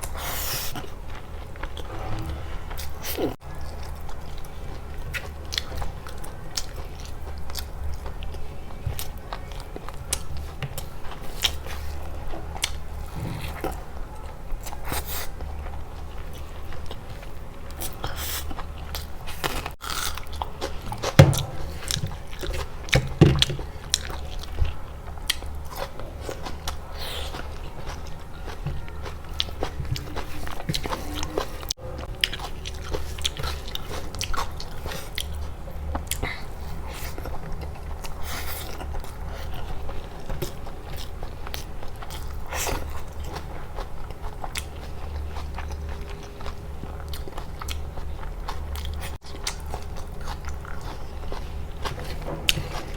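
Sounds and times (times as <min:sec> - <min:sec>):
person chewing and biting: 0:14.6 - 0:35.4, 0:36.0 - 0:52.9.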